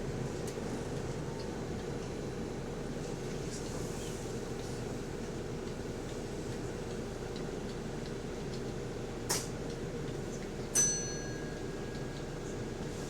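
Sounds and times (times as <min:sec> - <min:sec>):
low drone inside a bus: 0:00.0 - 0:13.0
bell-like ding: 0:10.8 - 0:11.6.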